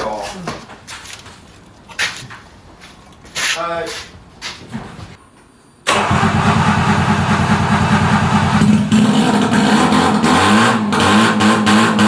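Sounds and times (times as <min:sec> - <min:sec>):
two-stroke engine running: 0:05.9 - 0:10.3.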